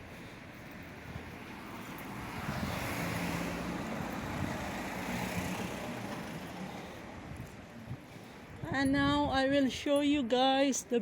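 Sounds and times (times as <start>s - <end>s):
car passing by: 0.4s - 7.3s.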